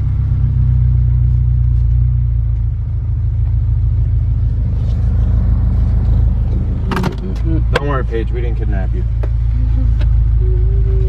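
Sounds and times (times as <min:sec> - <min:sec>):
car engine droning: 0:00.0 - 0:11.0.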